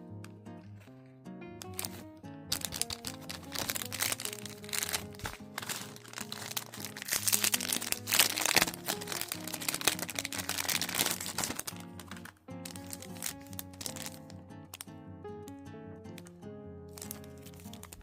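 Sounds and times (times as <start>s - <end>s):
background music: 0.0s - 18.0s
packaging crinkling: 1.6s - 14.9s, 17.0s - 18.0s.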